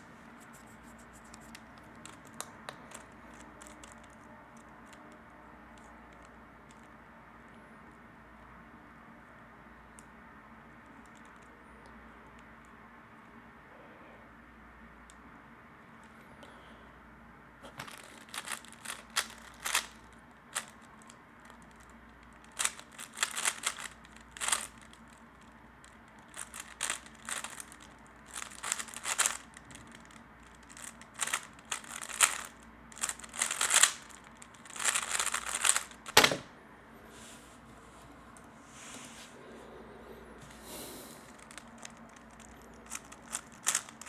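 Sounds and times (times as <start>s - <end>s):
puzzle cube plastic clicking: 1.2s - 6.9s, 17.7s - 36.5s, 40.7s - 44.0s.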